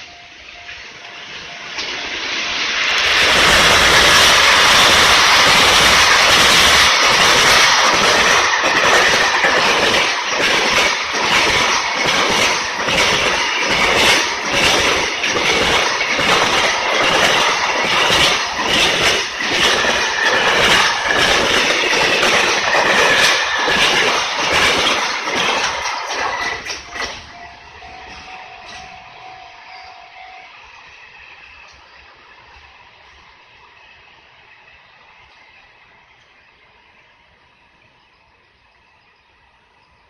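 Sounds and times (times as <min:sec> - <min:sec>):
freight train rumbling past: 0:00.0 - 0:40.0
wheels clacking over rail joints: 0:00.6 - 0:29.4.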